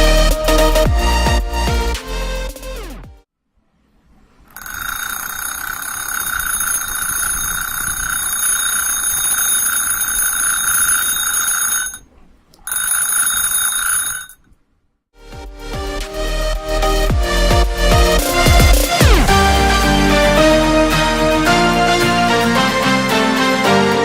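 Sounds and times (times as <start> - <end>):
electric school bell ringing: 4.6 - 12.0.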